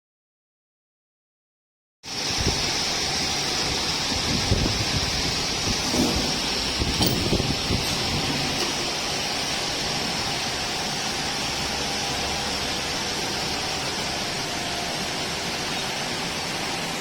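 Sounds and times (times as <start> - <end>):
milling machine running: 5.2 - 17.0.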